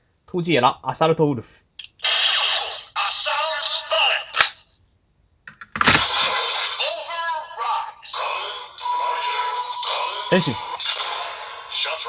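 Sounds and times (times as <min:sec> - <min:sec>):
synthesized toy music: 0:06.1 - 0:12.0.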